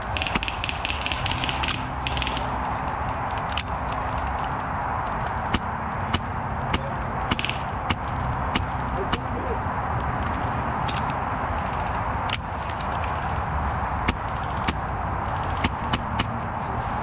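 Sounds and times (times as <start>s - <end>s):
airsoft gun firing: 0.1s - 2.5s, 5.5s - 8.8s.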